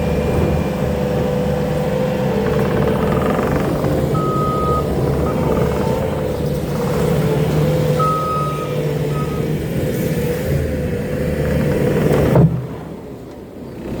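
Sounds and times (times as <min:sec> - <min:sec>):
diesel engine running: 0:00.0 - 0:14.0
high beeps: 0:04.2 - 0:05.5, 0:08.0 - 0:09.5.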